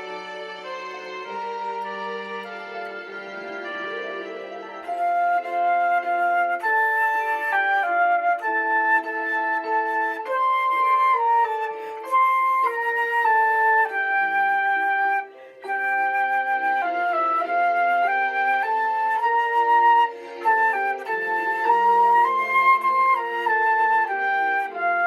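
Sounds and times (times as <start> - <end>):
keyboard accompanying chords: 0.0 - 25.0
keyboard flute-like melody: 0.0 - 25.0.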